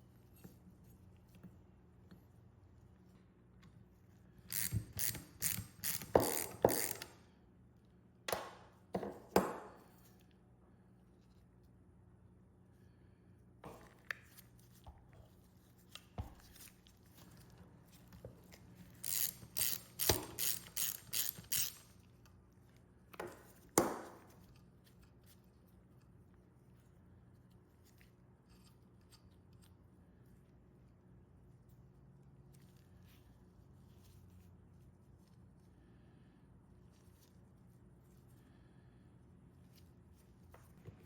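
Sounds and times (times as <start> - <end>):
metal parts clicking and knocking: 19.0 - 21.9.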